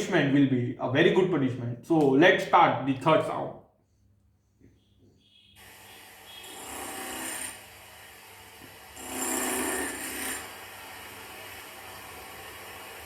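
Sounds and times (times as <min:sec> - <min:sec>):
rough rasping grinding noise: 0:06.3 - 0:07.7, 0:09.0 - 0:10.6.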